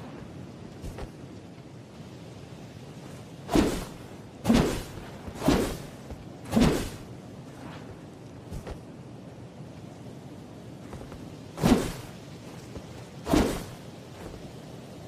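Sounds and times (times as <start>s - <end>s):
sword swishing through air: 0.8s - 1.2s, 3.4s - 8.9s, 11.6s - 12.2s, 13.2s - 14.4s.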